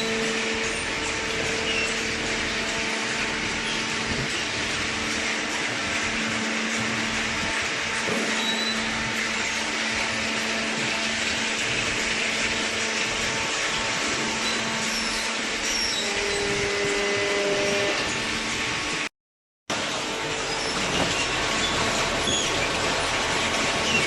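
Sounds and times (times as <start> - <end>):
electric motor and pump humming: 0.0 - 19.1, 19.7 - 24.0.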